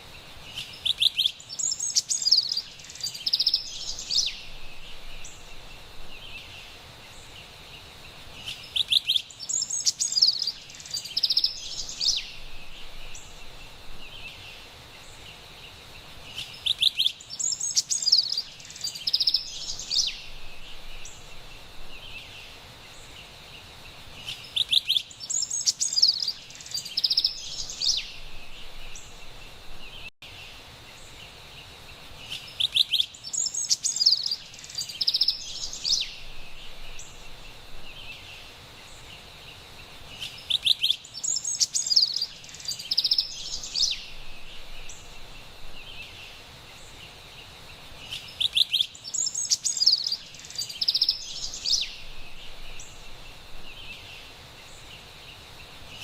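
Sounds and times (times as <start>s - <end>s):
forest ambience hiss: 0.0s - 56.0s
wren singing: 0.5s - 15.3s, 16.2s - 23.2s, 24.1s - 30.4s, 31.0s - 56.0s.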